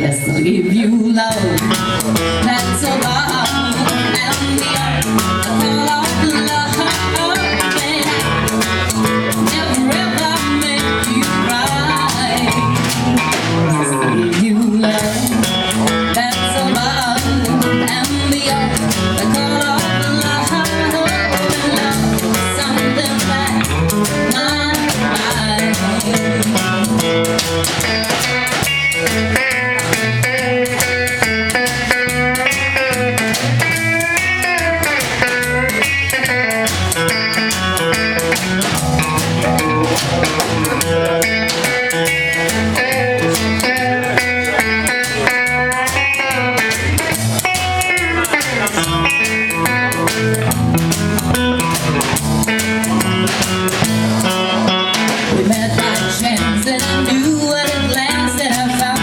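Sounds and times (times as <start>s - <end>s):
bass guitar: 0.0s - 59.0s
lead guitar solo: 0.0s - 59.0s
drum kit: 1.3s - 59.0s.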